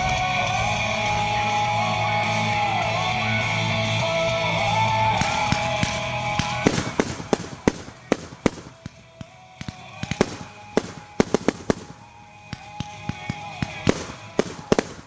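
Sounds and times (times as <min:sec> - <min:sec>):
fireworks cracks and pops: 0:00.0 - 0:01.6, 0:04.6 - 0:15.0
background music: 0:00.0 - 0:15.0.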